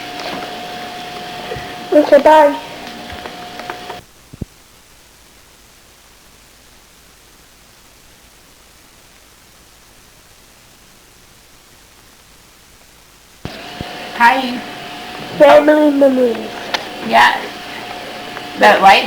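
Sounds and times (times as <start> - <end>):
tape hiss: 0.0 - 19.0.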